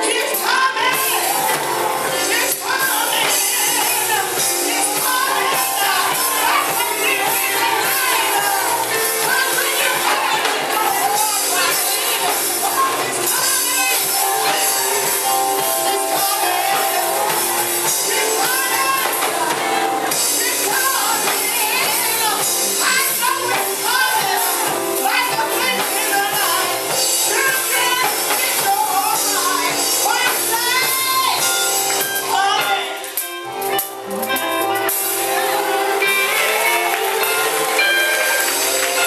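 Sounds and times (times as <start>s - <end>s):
gospel choir singing: 0.0s - 32.6s, 34.9s - 39.0s
band accompaniment: 0.0s - 39.0s.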